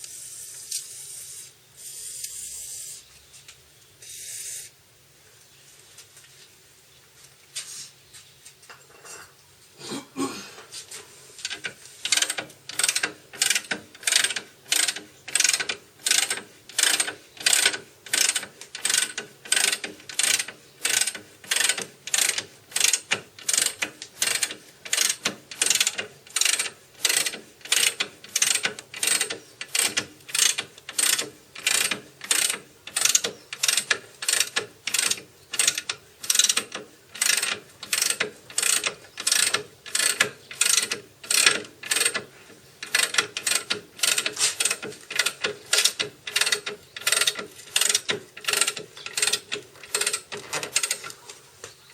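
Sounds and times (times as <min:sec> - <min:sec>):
ratchet wrench clicking: 0:11.4 - 0:51.1.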